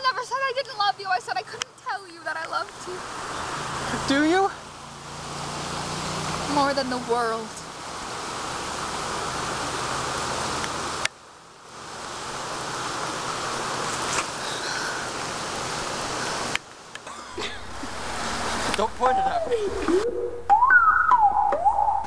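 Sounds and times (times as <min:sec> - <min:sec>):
steady rushing noise: 0:17.3 - 0:20.6.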